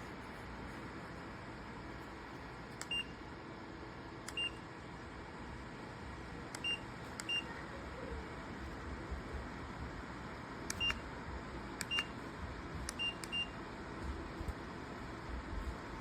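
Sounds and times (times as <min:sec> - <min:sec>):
fan heater running: 0:00.0 - 0:16.0
short beeps with clicks: 0:02.8 - 0:03.1, 0:04.3 - 0:04.6, 0:10.7 - 0:11.0, 0:11.8 - 0:12.1, 0:12.9 - 0:13.6.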